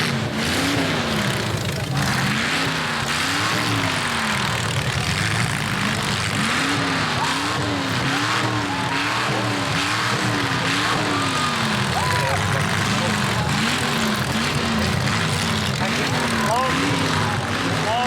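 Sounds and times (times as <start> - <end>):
car engines revving: 0.0 - 18.0
din of running engines: 0.0 - 18.0.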